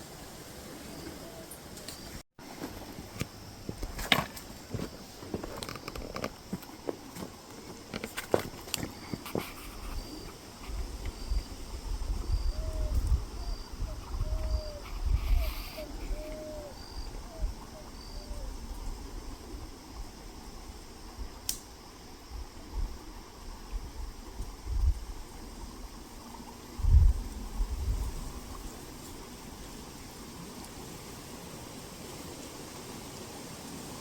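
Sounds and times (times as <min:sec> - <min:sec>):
wind buffeting microphone: 0:09.0 - 0:19.2, 0:26.7 - 0:28.7
bird lower curved calls: 0:12.2 - 0:18.6.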